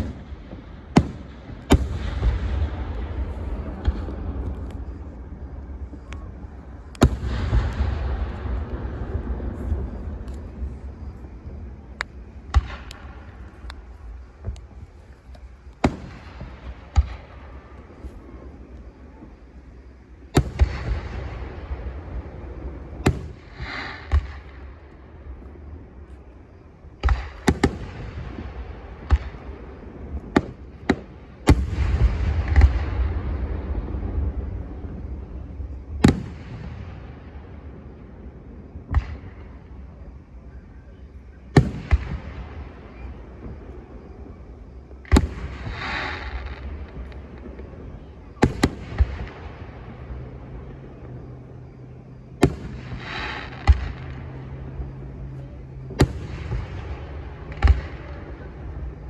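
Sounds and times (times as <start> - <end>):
low rumble: 0.0 - 19.4
fireworks bangs: 0.0 - 59.0
small firework pops: 0.0 - 59.0.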